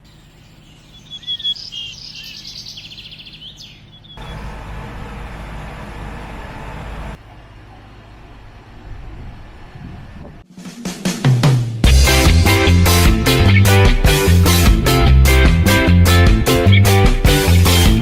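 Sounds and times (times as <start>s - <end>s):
birds chirping and trilling: 0.0s - 4.6s.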